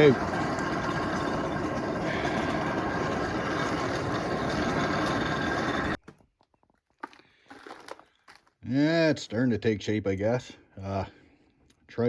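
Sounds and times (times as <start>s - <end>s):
forge blower running: 0.0s - 6.0s.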